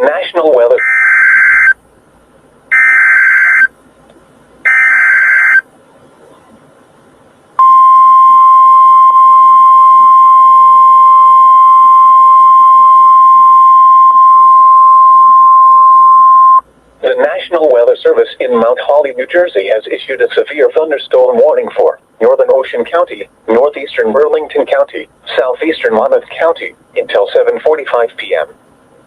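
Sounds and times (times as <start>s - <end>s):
steady loud warning alarm tone: 0.8s - 1.8s, 2.7s - 3.7s, 4.7s - 5.6s.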